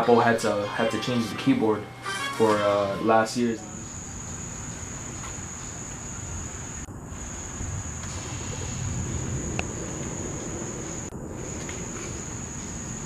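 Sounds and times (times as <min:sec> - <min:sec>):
high-pitched insect trill: 0:00.0 - 0:13.0
low rumble: 0:06.9 - 0:13.0.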